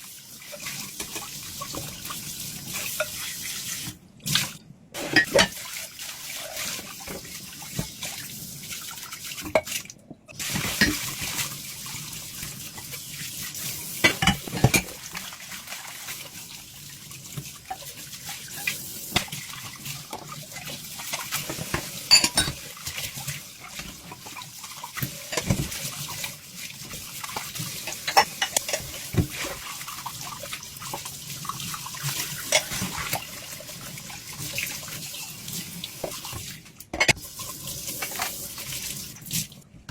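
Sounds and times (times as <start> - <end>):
water running in sink: 0.0 - 39.9
dishes clinking: 5.0 - 5.6, 14.0 - 14.9, 21.7 - 22.6, 25.3 - 25.7, 37.0 - 37.2.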